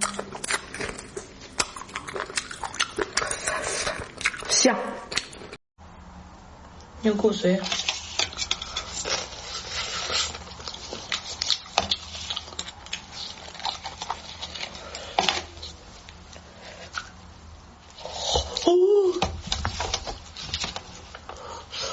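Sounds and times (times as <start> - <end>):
lip smacks: 0.0 - 4.5, 5.1 - 5.6
wet eating and sucking sounds: 0.0 - 5.6.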